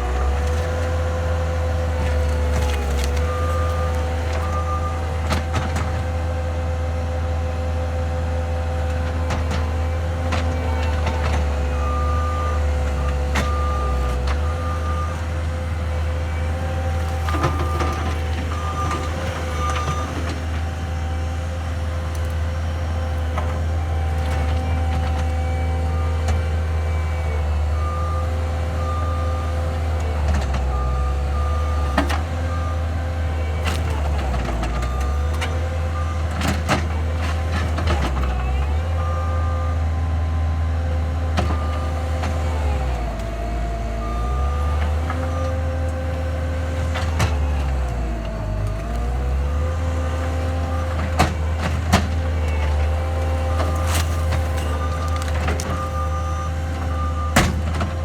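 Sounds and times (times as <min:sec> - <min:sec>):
diesel engine under load: 0:00.0 - 0:58.0.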